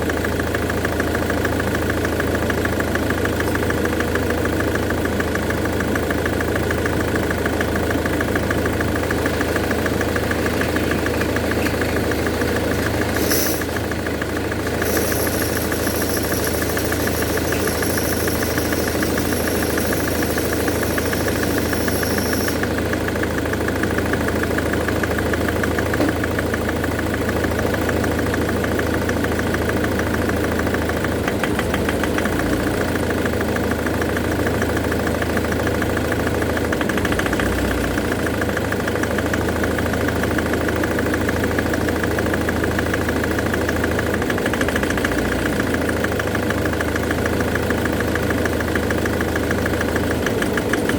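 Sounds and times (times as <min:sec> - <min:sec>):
car engine idling with knock: 0:00.0 - 0:50.9
faint high whine: 0:14.7 - 0:22.8.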